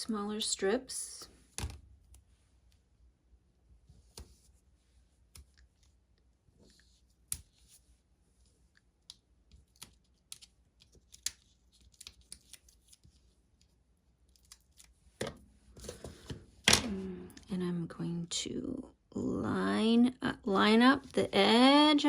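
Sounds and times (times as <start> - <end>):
tape and paper clicks: 9.0 - 13.7
paper crackling and rustling: 9.6 - 13.6.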